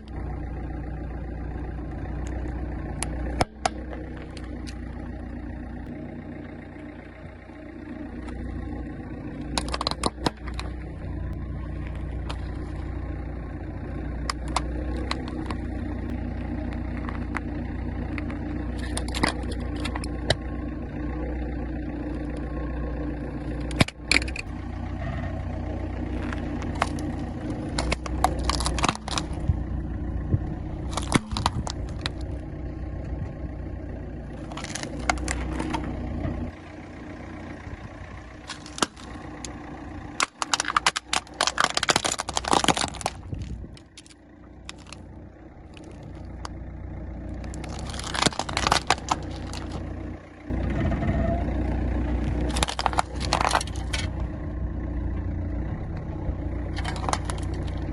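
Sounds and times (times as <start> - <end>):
car engine running: 0.0 - 57.9
sharp cracks and crunches: 2.1 - 5.4, 8.0 - 20.5, 23.2 - 33.4, 34.3 - 50.6, 51.9 - 54.4, 56.5 - 57.9.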